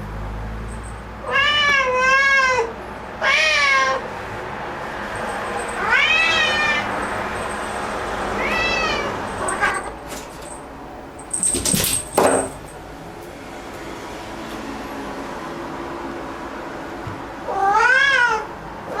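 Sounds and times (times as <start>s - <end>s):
cat meowing loudly: 1.2s - 4.0s, 5.8s - 7.0s, 8.3s - 10.0s, 17.5s - 19.0s.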